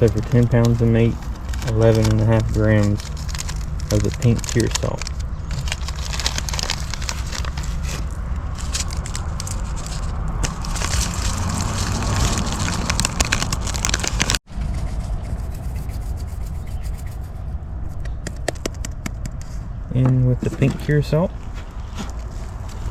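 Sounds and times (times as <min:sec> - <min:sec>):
plastic packaging crinkling: 0:00.0 - 0:14.4
steady low rumble: 0:00.0 - 0:22.9.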